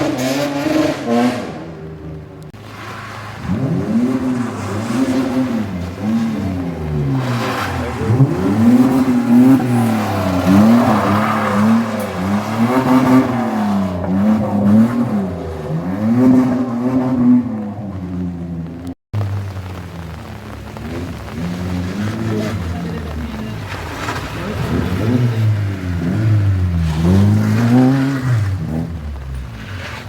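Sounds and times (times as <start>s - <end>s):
car engine revving hard: 0.0s - 30.0s
tyre and road noise: 0.0s - 30.0s.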